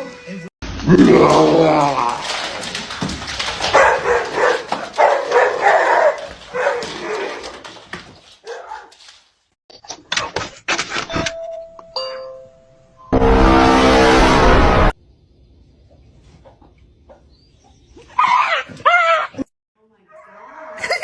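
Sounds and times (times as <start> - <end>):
dog barking: 3.7 - 7.4, 8.4 - 8.9
two-note doorbell chime: 11.4 - 13.1
loud dense noise: 13.2 - 14.9.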